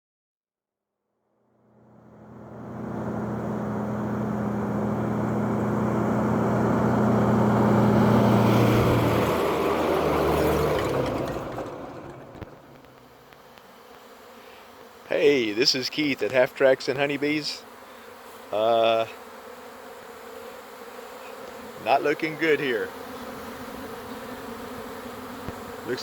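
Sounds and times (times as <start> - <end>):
engine-like drone: 1.5 - 13.3, 21.4 - 24.5, 25.4 - 26.0.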